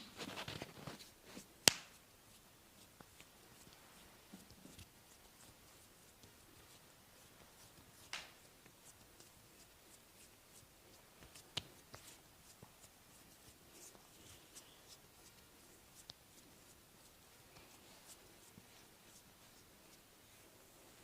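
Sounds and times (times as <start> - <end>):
hands rubbing skin: 0.0 - 21.0.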